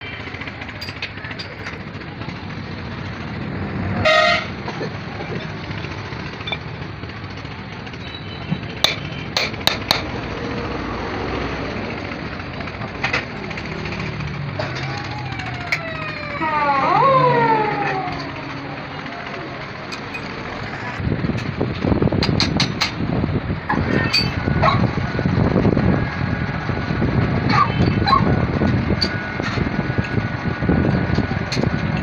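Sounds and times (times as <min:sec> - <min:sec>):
background traffic noise: 0:00.0 - 0:32.0
vehicle horn toot: 0:04.0 - 0:04.6.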